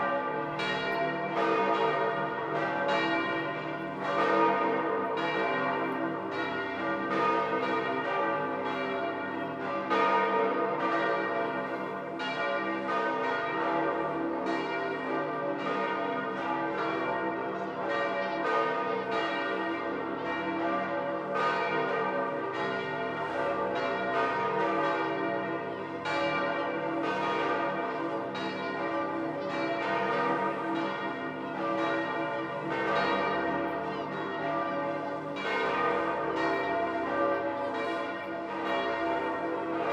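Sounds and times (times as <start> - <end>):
church bells pealing: 0.0 - 39.9.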